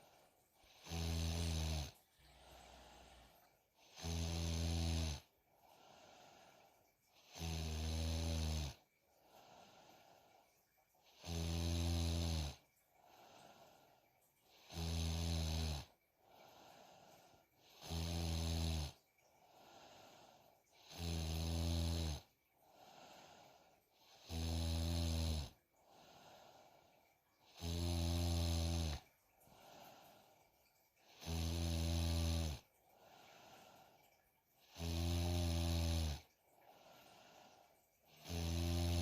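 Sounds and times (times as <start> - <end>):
soft breathing: 0.0 - 4.2, 5.2 - 7.3, 8.8 - 11.1, 12.6 - 14.7, 15.8 - 17.8, 19.0 - 20.9, 22.4 - 24.4, 25.5 - 27.6, 28.9 - 31.3, 32.6 - 35.4, 36.2 - 39.0
girl snoring heavily: 0.7 - 3.2, 3.8 - 5.3, 7.2 - 8.8, 11.1 - 12.6, 14.5 - 15.9, 17.6 - 19.0, 20.8 - 22.3, 24.0 - 25.6, 27.4 - 29.0, 31.1 - 32.6, 34.6 - 36.3, 38.1 - 39.0.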